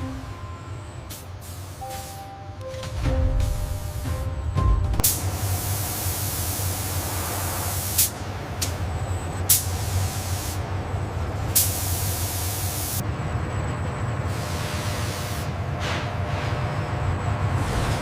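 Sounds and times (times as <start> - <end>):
low machine hum: 0.0 - 10.0.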